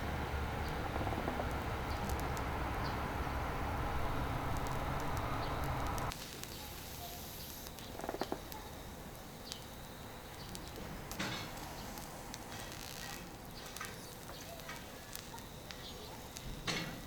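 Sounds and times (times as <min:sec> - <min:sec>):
low rumble: 0:00.0 - 0:06.1
charcoal fire crackling: 0:00.0 - 0:17.0.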